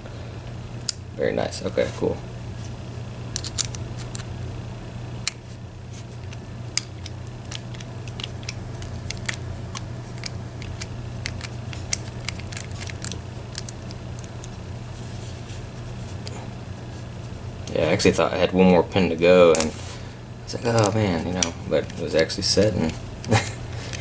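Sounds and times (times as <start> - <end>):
steady low hum: 0.0 - 24.0
clicks of small metal parts: 3.3 - 4.3, 6.2 - 14.4.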